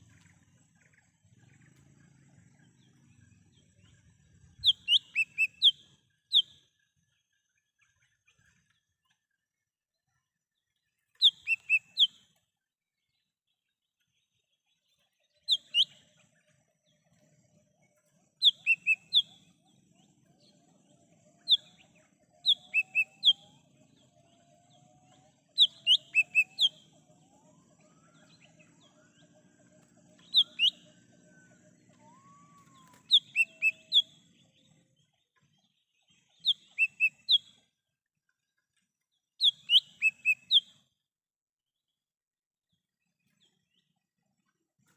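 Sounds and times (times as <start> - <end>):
bird high sharp chirps: 4.6 - 6.6, 11.2 - 12.2, 15.5 - 16.1, 18.4 - 19.6, 21.4 - 24.4, 25.5 - 27.1, 27.9 - 31.0, 31.8 - 34.3, 36.3 - 37.5, 39.4 - 40.8.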